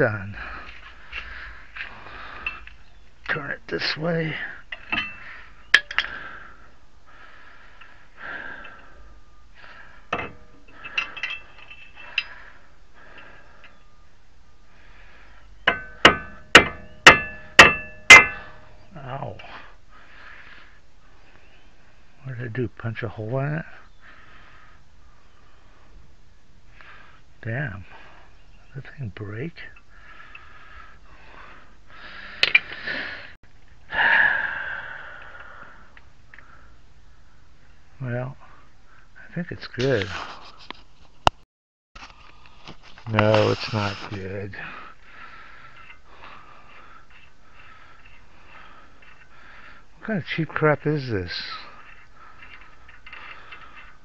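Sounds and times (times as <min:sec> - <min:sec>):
metal tools clinking: 0:02.2 - 0:02.9, 0:04.7 - 0:06.3, 0:10.1 - 0:13.8, 0:15.6 - 0:18.9, 0:47.1 - 0:54.0
faint tool clinks: 0:10.2 - 0:12.4
hammer striking metal punch: 0:15.6 - 0:18.6
man exhaling heavily: 0:33.9 - 0:35.9.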